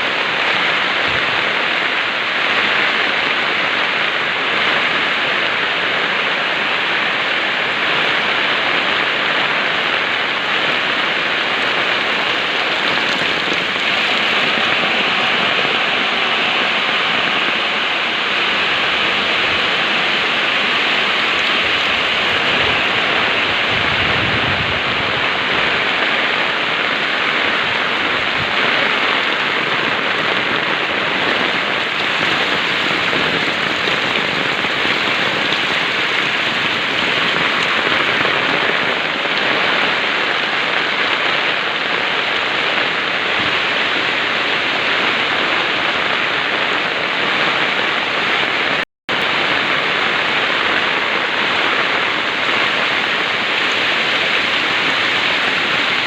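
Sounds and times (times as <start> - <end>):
heavy rain pouring: 0.0 - 56.0.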